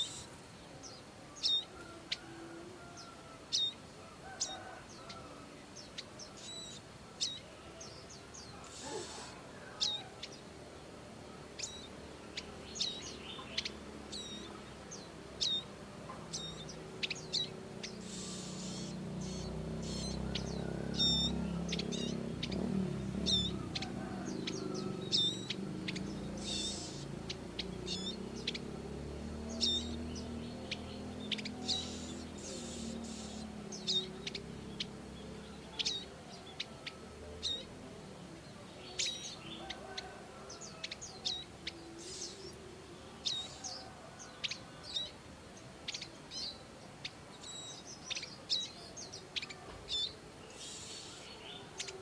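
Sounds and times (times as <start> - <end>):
bird giving sharp high chirps: 16.4 - 22.6, 25.2 - 28.6.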